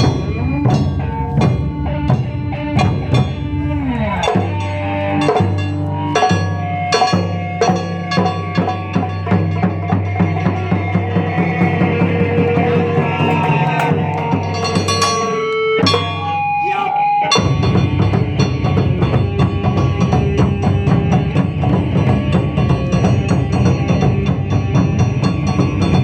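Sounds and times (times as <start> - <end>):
held pitched tones: 0.0 - 19.1
drums in fast rhythm: 0.0 - 26.0.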